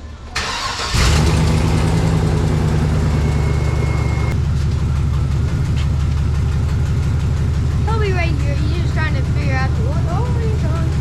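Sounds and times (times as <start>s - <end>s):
truck engine idling: 0.4s - 11.0s.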